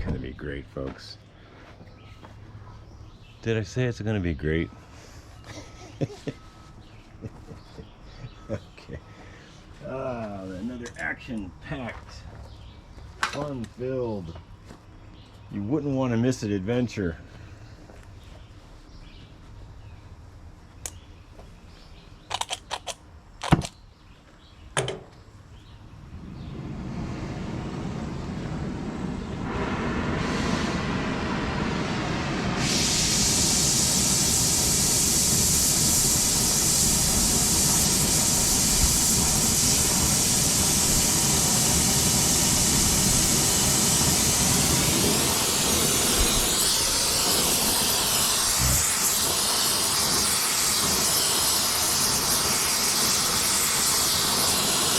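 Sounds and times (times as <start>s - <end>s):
gas torch flame roaring: 25.8s - 54.9s.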